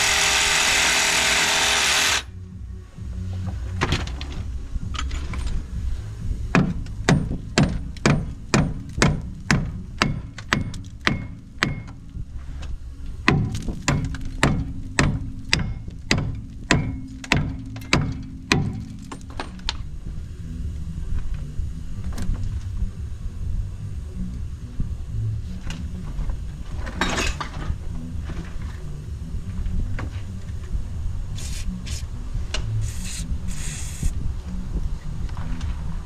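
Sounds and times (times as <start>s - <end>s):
steady low hum: 0.0s - 36.0s
hammer striking metal: 6.6s - 12.0s, 13.3s - 19.6s.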